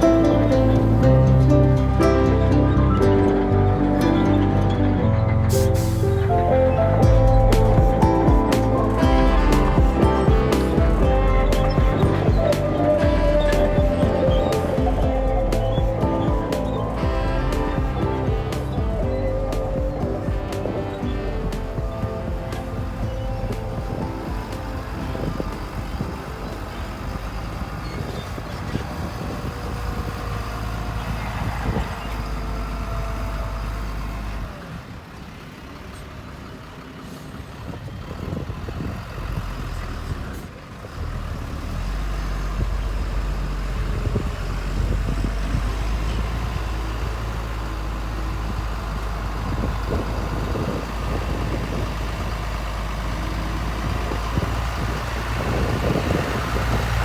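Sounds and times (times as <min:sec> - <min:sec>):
heavy diesel engine running: 0:00.0 - 0:57.0.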